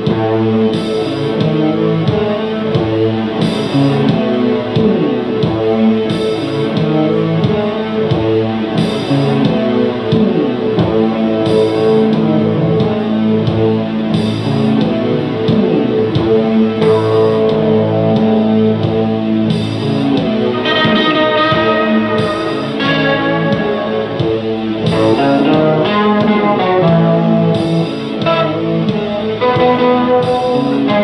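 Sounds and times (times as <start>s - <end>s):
electric guitar sustained chords: 0.0s - 31.0s.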